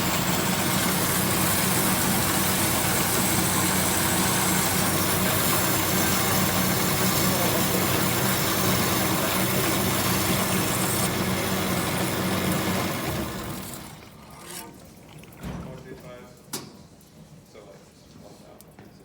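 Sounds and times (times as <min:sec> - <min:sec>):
bandsaw motor hum: 0:00.0 - 0:14.2.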